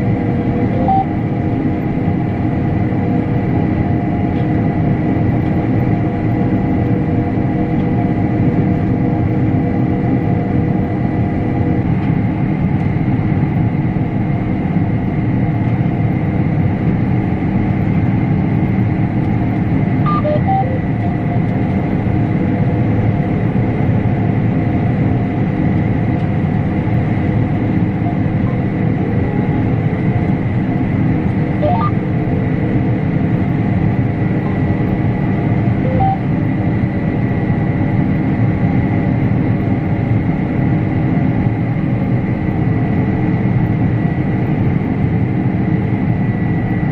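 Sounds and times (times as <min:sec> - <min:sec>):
combine harvester drone and whine: 0:00.0 - 0:46.9
faint short tones: 0:20.1 - 0:20.8, 0:31.6 - 0:32.0, 0:35.8 - 0:36.2.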